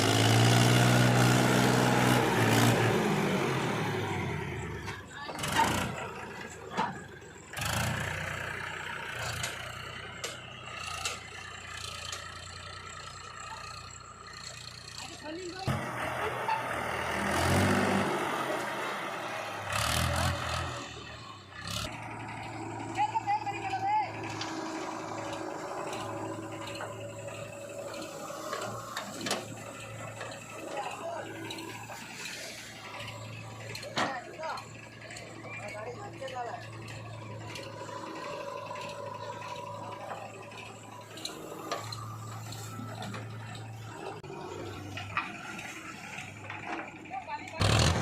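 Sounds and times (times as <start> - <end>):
diesel engine humming: 0.0 - 48.0.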